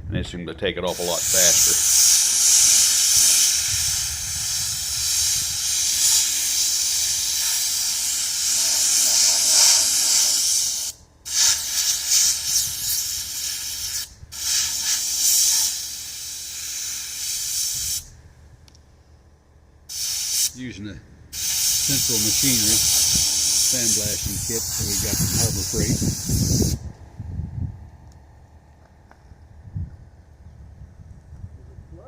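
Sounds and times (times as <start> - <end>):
sandblasting gun hissing: 0.9 - 18.1, 19.9 - 20.6, 21.3 - 26.9.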